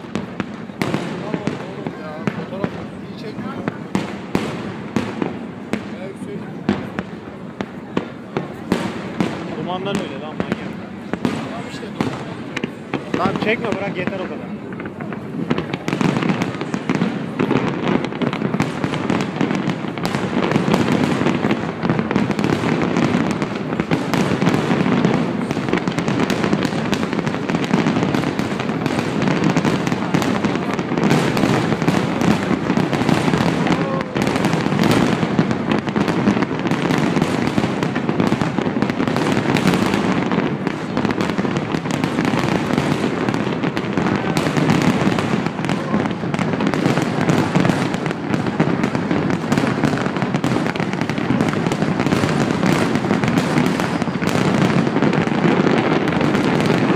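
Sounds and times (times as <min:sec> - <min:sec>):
fireworks bangs and crackling: 0:00.0 - 0:56.9.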